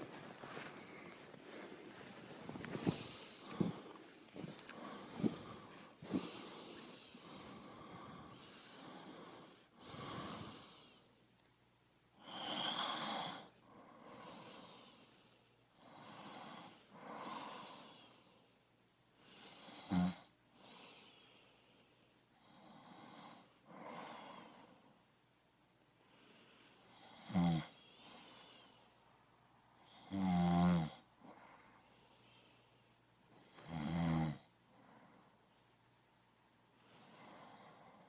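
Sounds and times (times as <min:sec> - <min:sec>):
heavy breathing: 0:00.0 - 0:11.2, 0:12.2 - 0:18.6
snore-like snort: 0:19.6 - 0:20.3, 0:27.1 - 0:27.8, 0:30.0 - 0:31.0, 0:33.5 - 0:34.5.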